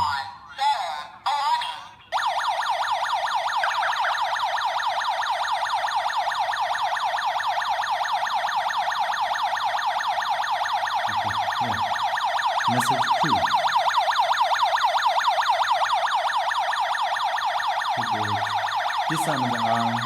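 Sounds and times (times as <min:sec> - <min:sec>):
alarm siren wailing: 0:00.0 - 0:00.5, 0:02.0 - 0:20.0.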